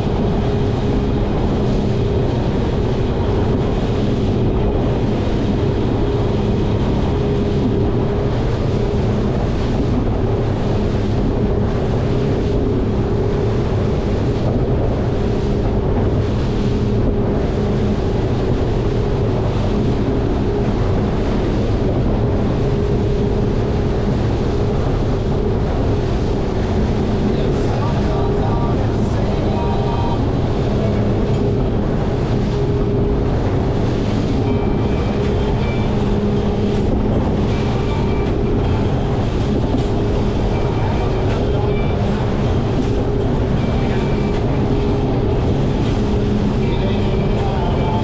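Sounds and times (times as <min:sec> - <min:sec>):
outboard engines humming: 0:00.0 - 0:48.0
water noise from hull: 0:00.0 - 0:48.0
wind on microphone: 0:00.0 - 0:48.0.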